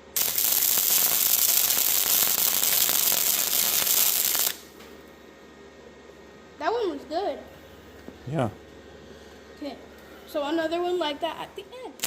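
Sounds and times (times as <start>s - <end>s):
welding arc crackling: 0.0s - 4.8s.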